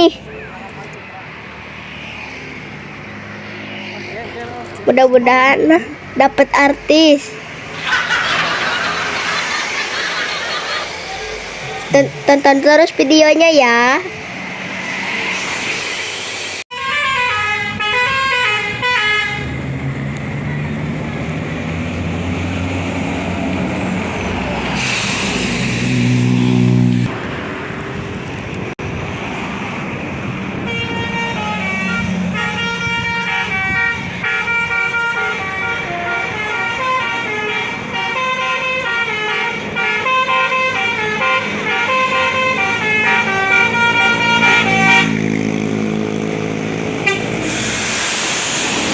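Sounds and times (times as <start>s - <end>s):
bus engine passing: 0.0s - 48.9s
multi-tone bus air horn tune: 16.7s - 19.6s, 30.6s - 45.4s, 47.0s - 48.8s.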